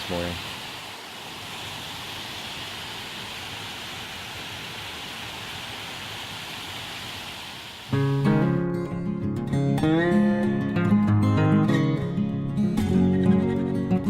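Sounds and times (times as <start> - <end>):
creek water rushing: 0.0 - 8.2.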